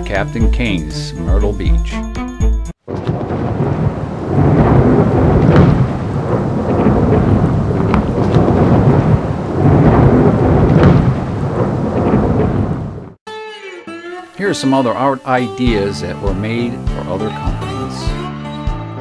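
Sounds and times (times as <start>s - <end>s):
heavy rain: 2.8s - 13.2s
rolling thunder: 2.8s - 13.2s.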